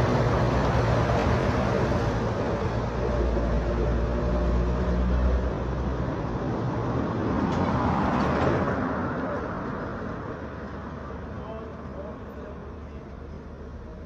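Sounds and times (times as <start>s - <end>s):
road noise: 0.0s - 14.0s
vehicle engine humming: 0.0s - 14.0s.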